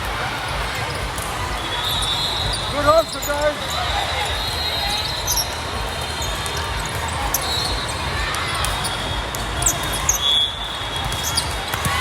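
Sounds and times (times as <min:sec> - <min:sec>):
crowd murmur: 0:00.0 - 0:12.0
shoes squeaking: 0:00.8 - 0:12.0
volleyballs thudding: 0:10.9 - 0:12.0.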